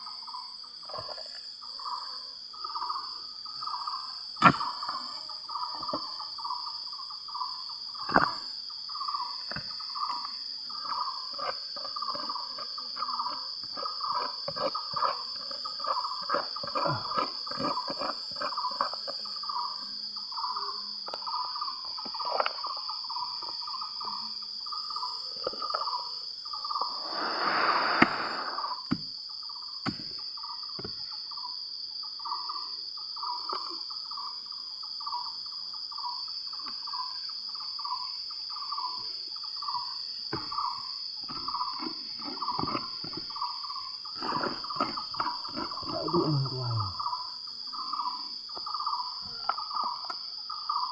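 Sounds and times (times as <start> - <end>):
insects buzzing: 0.0 - 50.9
pulsing insect call: 0.0 - 50.9
knocks of digging stones and soil: 0.9 - 1.5, 4.3 - 6.2, 8.0 - 8.6, 9.4 - 19.9, 21.0 - 22.8, 27.1 - 29.2, 29.8 - 31.1, 40.2 - 47.0.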